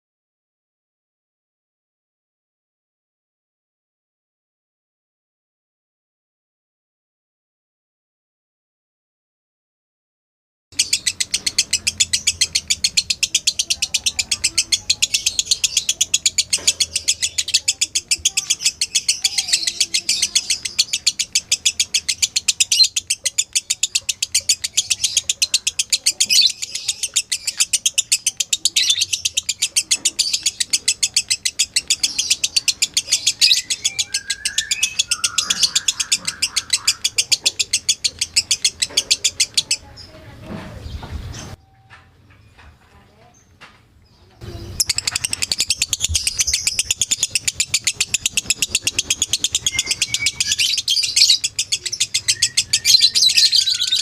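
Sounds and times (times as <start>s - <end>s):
bird chattering high-pitched: 10.8s - 41.6s, 44.4s - 54.0s.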